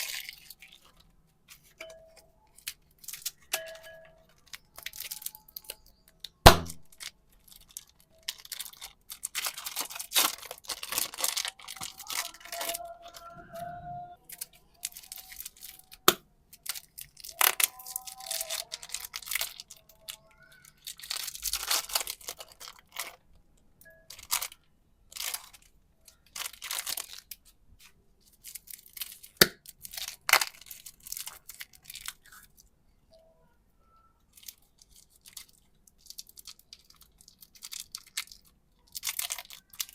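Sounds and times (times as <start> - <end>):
packaging crinkling and tearing: 0.0 - 13.4, 14.2 - 23.4, 24.1 - 32.6, 34.2 - 39.9
faint squeaks: 10.9 - 16.0, 17.1 - 22.6, 31.6 - 35.6.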